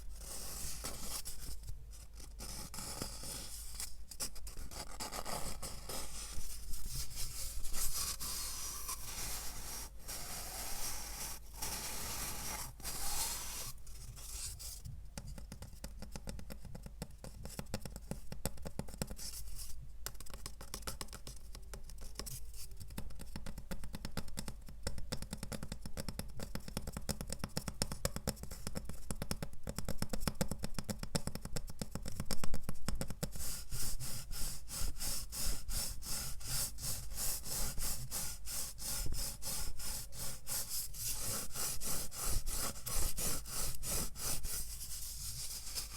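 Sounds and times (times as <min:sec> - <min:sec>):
scratching on microphone: 0:00.2 - 0:14.8, 0:33.7 - 0:45.9.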